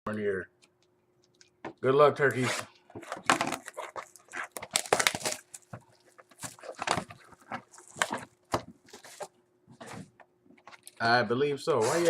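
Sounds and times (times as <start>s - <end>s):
wrapper crinkling and tearing: 2.3s - 9.4s, 11.8s - 12.0s.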